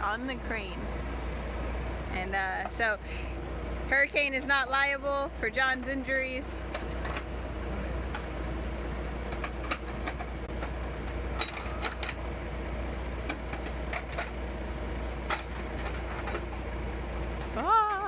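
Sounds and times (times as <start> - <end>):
truck engine running: 0.0 - 18.0
metal rigging clicks and knocks: 6.6 - 7.3, 9.3 - 12.3, 15.2 - 16.6.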